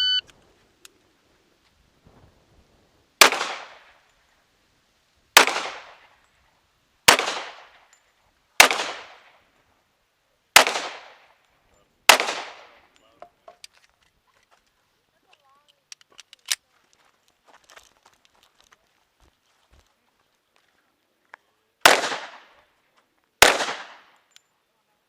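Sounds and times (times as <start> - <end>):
pistol shots with echo: 3.2 - 3.9, 5.4 - 6.0, 7.1 - 7.8, 8.6 - 9.3, 10.6 - 11.3, 12.1 - 12.9, 21.8 - 22.6, 23.4 - 24.2.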